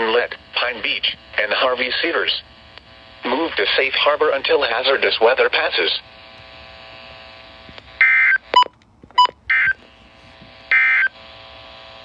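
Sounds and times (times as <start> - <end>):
steady background hum: 0.0 - 12.0.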